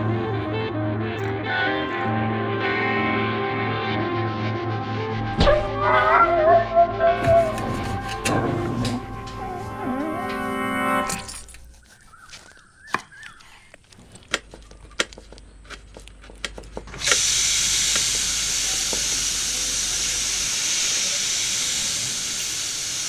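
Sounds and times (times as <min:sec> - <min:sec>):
steady hiss: 0:17.1 - 0:23.0.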